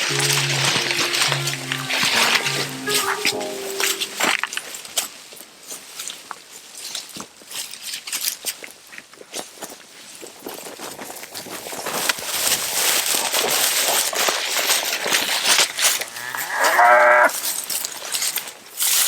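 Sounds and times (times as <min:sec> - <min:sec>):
cow mooing: 0:16.1 - 0:17.3.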